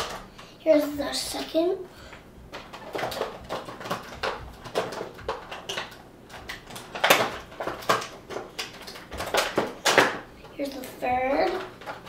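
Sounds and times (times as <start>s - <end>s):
plastic packaging crinkling: 2.5s - 12.0s.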